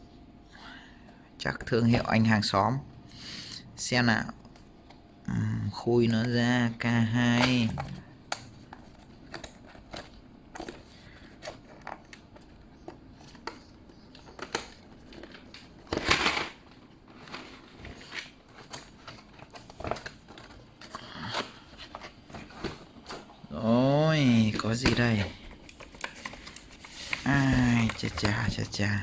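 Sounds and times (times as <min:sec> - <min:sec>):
packaging rustling: 0:07.6 - 0:29.0.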